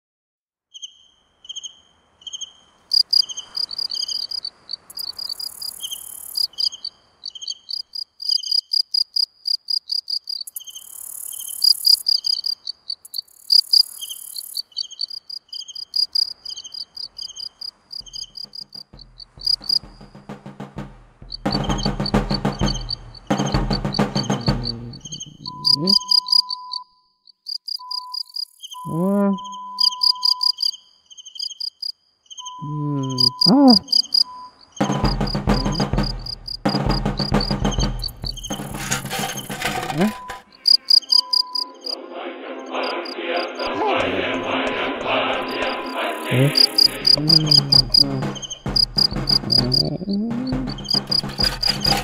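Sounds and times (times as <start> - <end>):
high-pitched chirping pulses: 21.4 - 26.9, 27.6 - 30.7, 32.5 - 36.0, 45.9 - 51.2.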